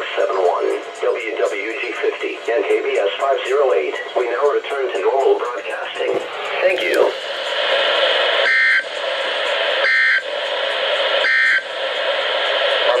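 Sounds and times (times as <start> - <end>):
radio hiss: 5.6 - 13.0.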